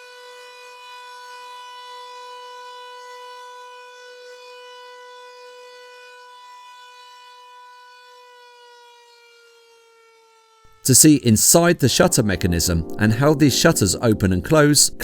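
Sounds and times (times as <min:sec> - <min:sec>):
muffled motor siren steady tone: 0:00.0 - 0:10.8.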